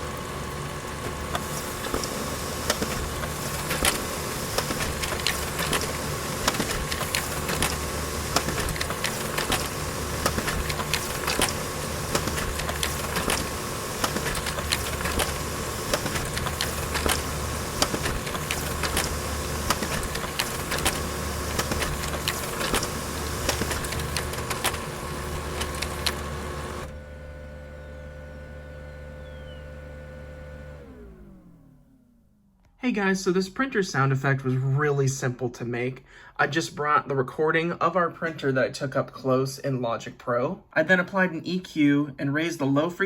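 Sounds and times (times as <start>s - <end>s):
printer motor whirring: 0.0s - 32.2s
printer mechanism clicking: 1.0s - 27.0s.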